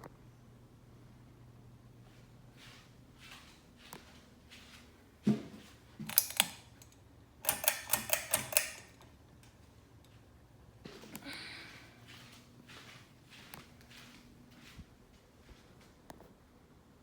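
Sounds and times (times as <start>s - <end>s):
fan pull-chain switch clicking: 6.1s - 9.1s.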